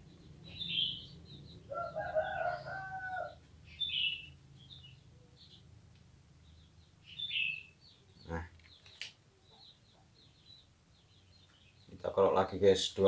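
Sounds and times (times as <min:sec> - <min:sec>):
rooster crowing: 0:01.7 - 0:03.4.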